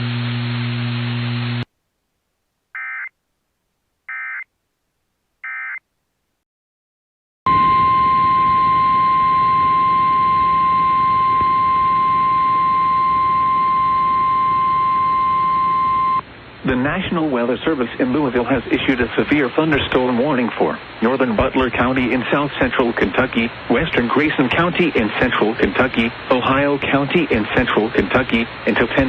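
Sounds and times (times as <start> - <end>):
steady warning alarm tone: 2.8 - 3.1, 4.1 - 4.4, 7.5 - 16.2.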